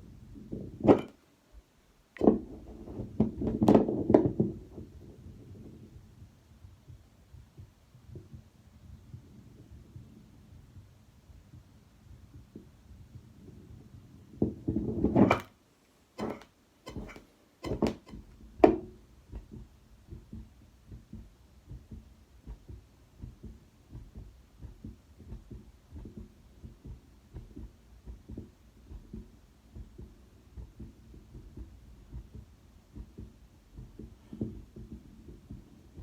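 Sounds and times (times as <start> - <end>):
heartbeat through stethoscope: 2.5 - 15.1, 16.9 - 36.0
stethoscope chest piece rumbling: 16.2 - 36.0.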